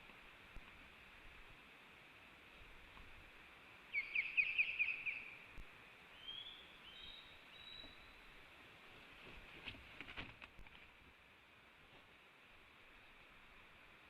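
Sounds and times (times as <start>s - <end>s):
eagle calling: 3.9s - 5.4s.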